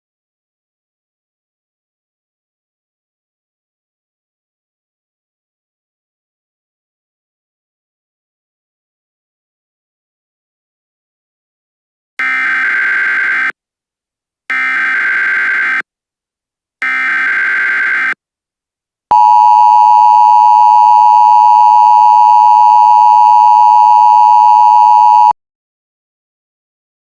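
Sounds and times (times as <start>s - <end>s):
two-tone attention signal: 19.1s - 25.4s.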